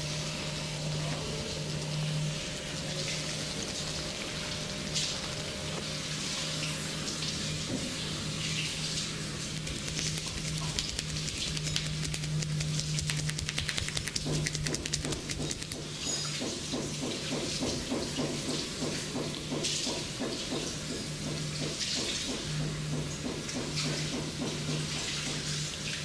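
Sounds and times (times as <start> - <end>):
water running: 0.0 - 22.5
rhythmic hair scrubbing strokes: 2.2 - 7.3, 8.7 - 20.7.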